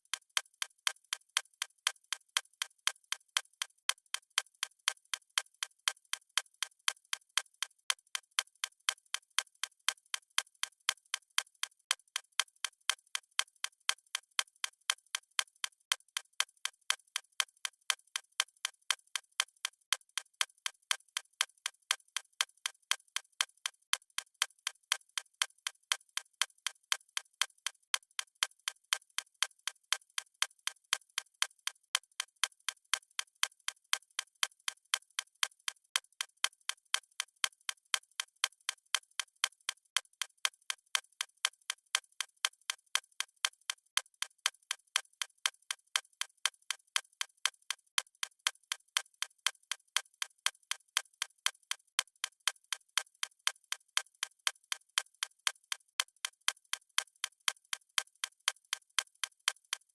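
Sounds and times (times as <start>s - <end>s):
watch ticking: 32.4s - 59.9s.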